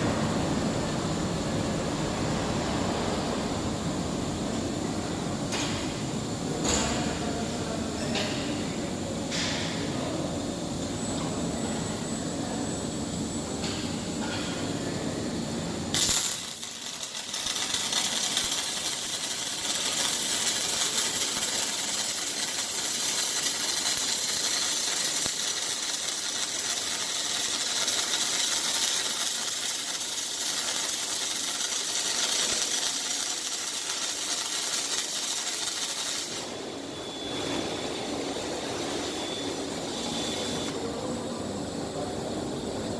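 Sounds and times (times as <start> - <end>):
quiet machine noise: 0.0 - 42.9
welding arc crackling hiss: 15.7 - 41.1.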